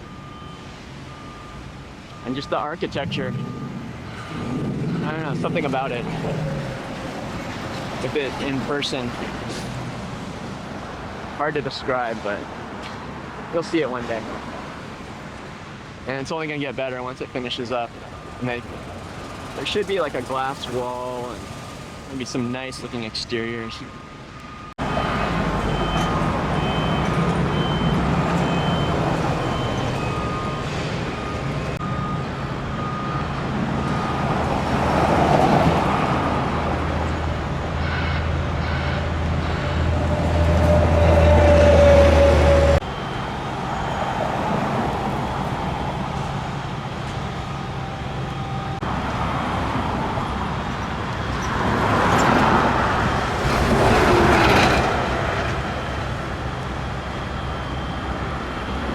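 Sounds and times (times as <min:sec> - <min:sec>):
short electronic beep: 0:00.0 - 0:05.5
road traffic rumble: 0:00.0 - 0:58.9
vehicle whine: 0:00.0 - 0:58.9.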